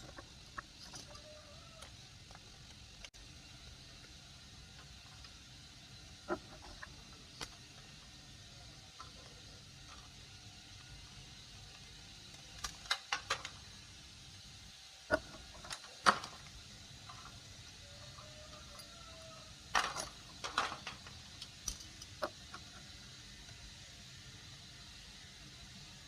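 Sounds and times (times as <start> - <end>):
plastic and metal parts clattering: 19.7 - 22.7.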